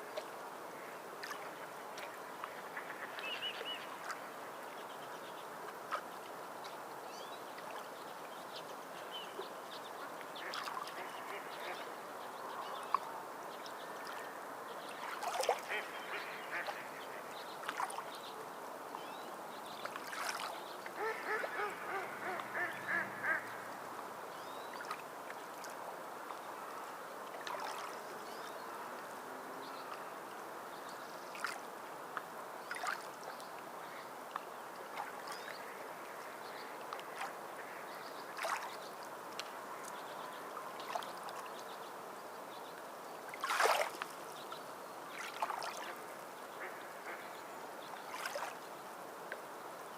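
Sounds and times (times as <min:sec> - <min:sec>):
waterfowl quacking: 0:15.5 - 0:17.0, 0:21.0 - 0:23.7, 0:46.6 - 0:47.3.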